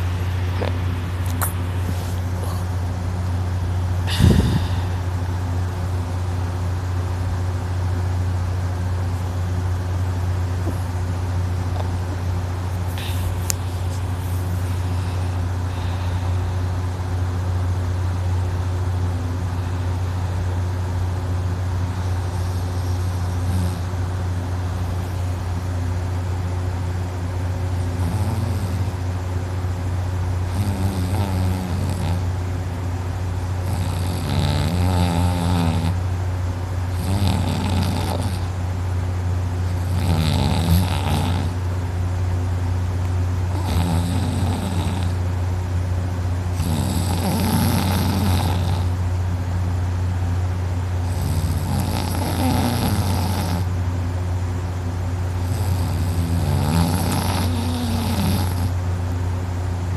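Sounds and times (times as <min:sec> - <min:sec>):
constant low drone: 0:00.0 - 0:59.9
woman snoring heavily: 0:04.0 - 0:05.2, 0:14.7 - 0:16.7, 0:22.0 - 0:23.9, 0:27.8 - 0:29.0, 0:30.5 - 0:32.3, 0:33.6 - 0:36.0, 0:36.9 - 0:38.6, 0:39.7 - 0:41.6, 0:43.5 - 0:45.2, 0:46.5 - 0:49.0, 0:51.0 - 0:53.7, 0:55.4 - 0:58.8.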